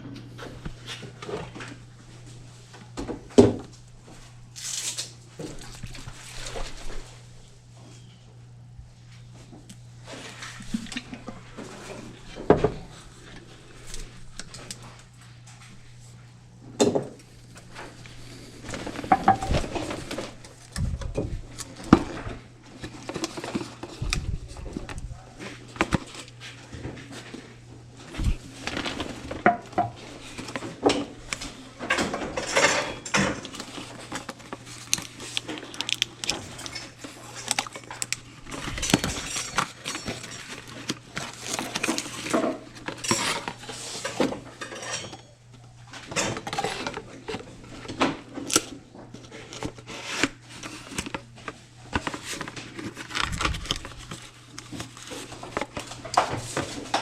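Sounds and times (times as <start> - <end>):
dishes and glassware clinking: 44.6 - 45.4.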